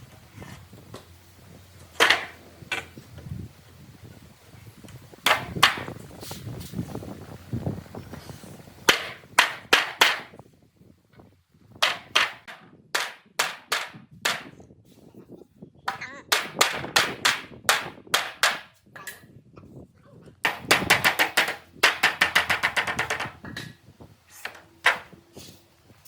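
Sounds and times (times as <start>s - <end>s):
hammering on wood: 5.2s - 5.8s, 8.9s - 10.3s, 11.8s - 14.6s, 15.9s - 18.8s, 20.4s - 23.6s.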